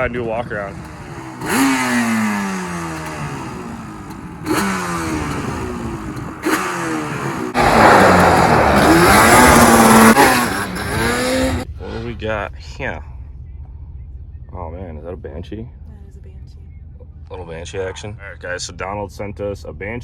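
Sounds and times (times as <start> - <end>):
two-stroke quad engine revving: 0.0 - 11.8.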